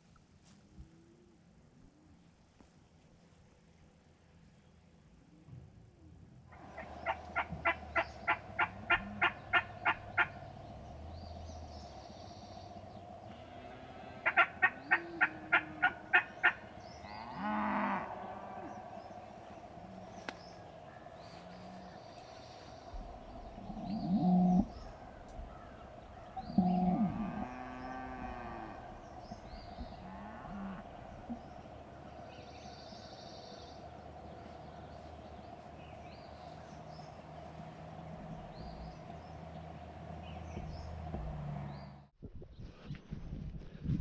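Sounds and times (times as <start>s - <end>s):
cattle mooing: 6.8s - 11.7s, 13.3s - 20.1s, 23.4s - 31.7s.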